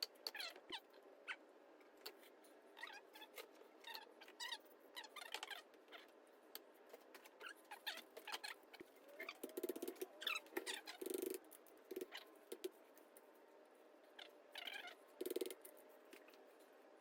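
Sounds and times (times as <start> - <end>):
hand tools clicking and squeaking: 14.6 - 16.3.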